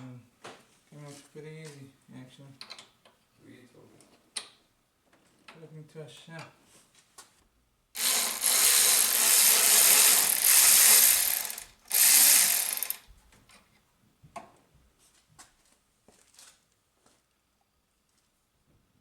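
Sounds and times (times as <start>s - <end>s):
ratchet spinning a bolt: 8.0s - 13.0s.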